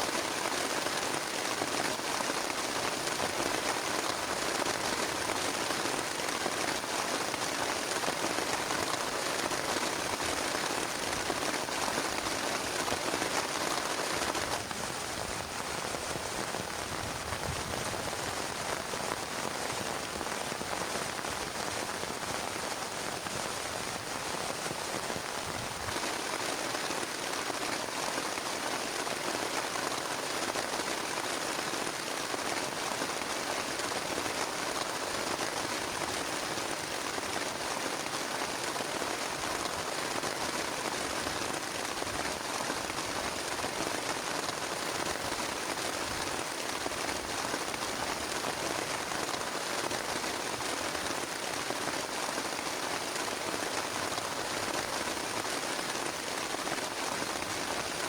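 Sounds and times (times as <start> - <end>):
heavy rain on plastic tarp: 0.0 - 58.0.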